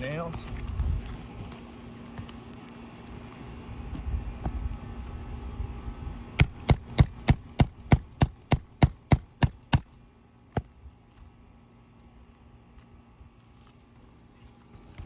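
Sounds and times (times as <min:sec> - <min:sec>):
hammer striking metal tool: 0:06.4 - 0:10.0.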